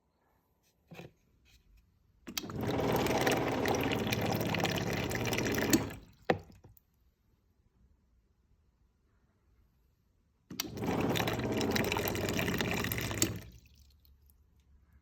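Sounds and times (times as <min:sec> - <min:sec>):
water flowing from dispenser: 0:02.3 - 0:06.7, 0:10.5 - 0:13.9.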